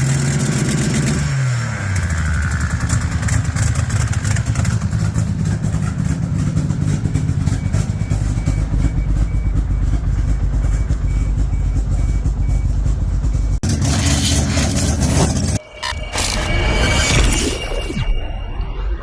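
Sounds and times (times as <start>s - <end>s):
vehicle engine running: 0.0s - 16.0s
low exhaust pulse: 6.3s - 13.6s.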